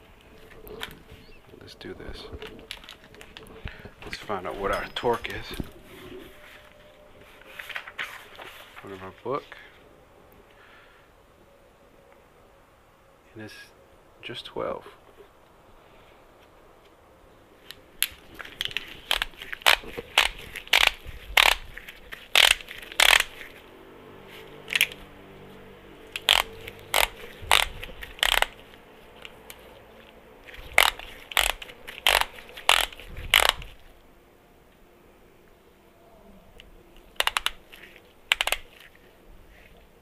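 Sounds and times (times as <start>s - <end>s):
socket wrench clicking: 22.3s - 23.4s, 24.6s - 25.0s, 26.1s - 28.6s, 30.7s - 33.7s, 37.2s - 38.9s.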